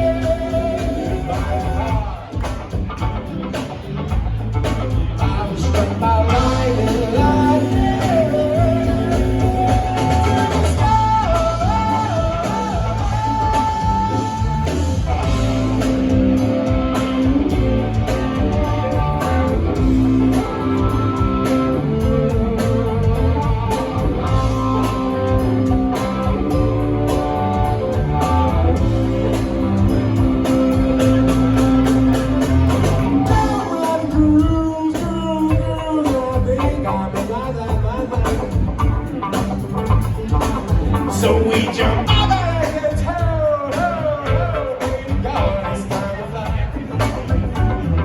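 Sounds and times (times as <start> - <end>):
person singing: 0.0 - 2.3, 5.2 - 15.9, 30.8 - 38.5, 41.0 - 47.2
live rock band playing: 0.0 - 48.0.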